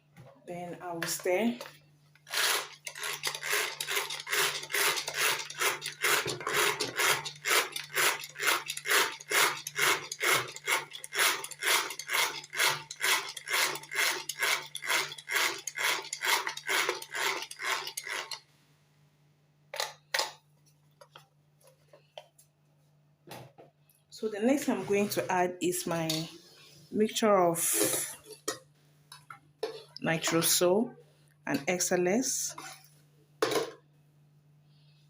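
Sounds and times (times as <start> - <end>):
utensil scraping a bowl: 2.3 - 18.4, 32.5 - 32.9.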